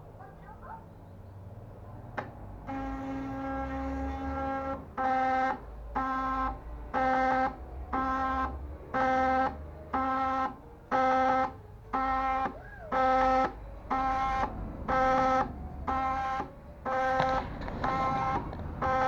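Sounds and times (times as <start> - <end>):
stepper motors whining: 12.0 - 19.0.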